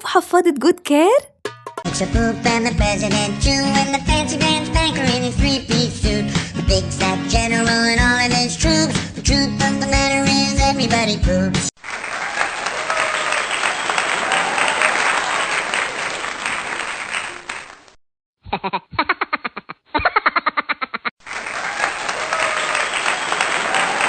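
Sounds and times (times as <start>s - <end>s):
audience applause and cheering: 11.8s - 18.0s, 21.2s - 24.0s.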